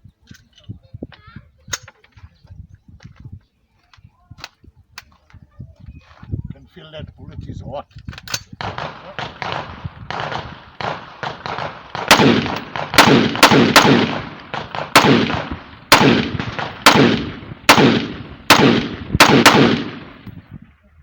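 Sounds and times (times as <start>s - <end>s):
distant gunshots: 8.6s - 20.4s
rifle shots echoing: 8.6s - 20.5s.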